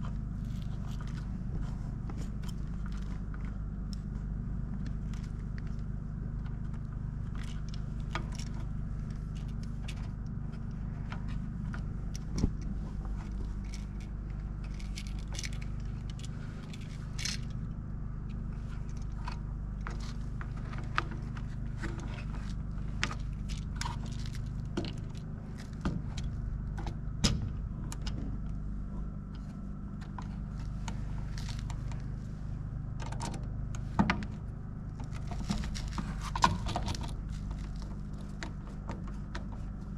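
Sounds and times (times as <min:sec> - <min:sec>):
steady low hum: 0:00.0 - 0:39.9
small metallic clicks and rattles: 0:04.8 - 0:17.6, 0:18.3 - 0:28.2, 0:35.0 - 0:39.8.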